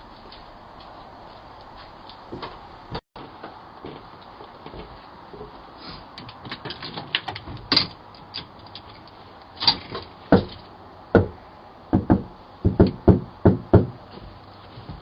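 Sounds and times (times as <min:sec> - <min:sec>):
knocks and thumps: 0:09.6 - 0:15.0.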